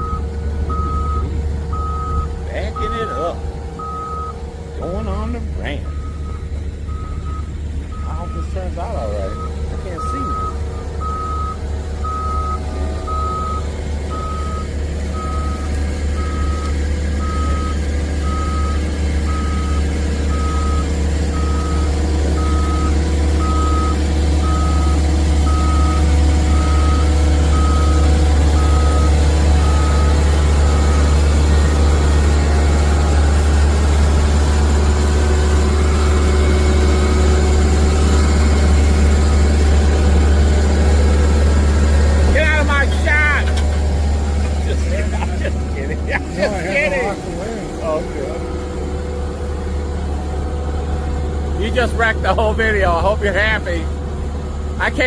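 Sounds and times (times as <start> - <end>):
reversing alarm beeping: 0.0 - 43.6
heavy vehicle engine running: 0.0 - 55.0.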